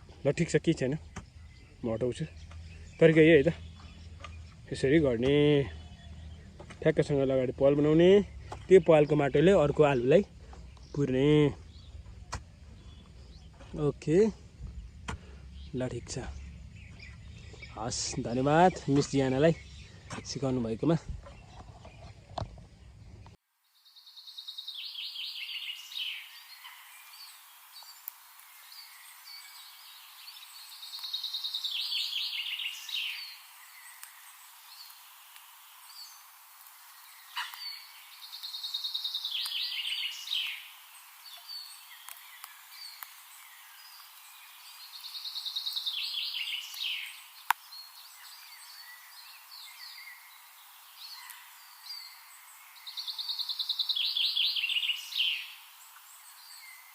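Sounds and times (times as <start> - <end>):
faint bird chirps: 0.0 - 56.9
songbird trilling: 0.8 - 22.1, 23.9 - 56.9.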